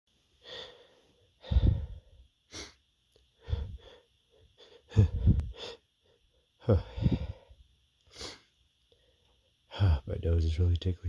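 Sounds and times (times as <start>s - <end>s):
man gasping wheezy in-breaths: 0.4s - 2.8s, 3.4s - 4.0s, 4.6s - 5.8s, 6.6s - 8.4s.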